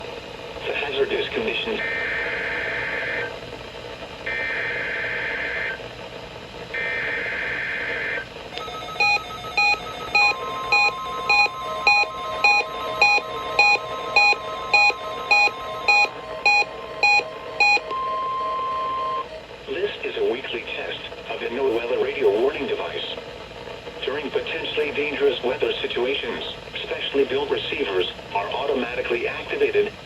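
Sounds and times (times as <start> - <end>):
buzzy data tone bursts: 6.7 - 19.3
steady tone: 8.6 - 19.2
weather radio beeping: 8.6 - 19.3.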